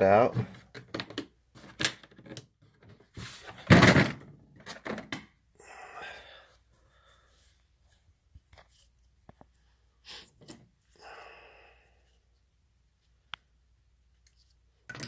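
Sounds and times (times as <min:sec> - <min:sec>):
clicks and knocks of parts handled: 0:00.4 - 0:03.0, 0:14.2 - 0:15.0
soft rustle: 0:06.7 - 0:10.0.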